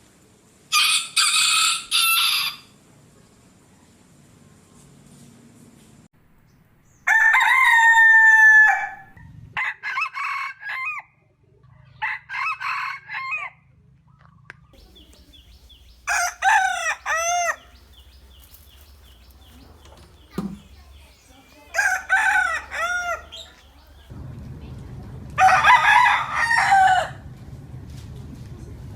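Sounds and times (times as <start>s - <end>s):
roosters crowing: 0.7s - 2.7s, 7.1s - 9.1s, 14.8s - 24.1s, 25.4s - 27.2s.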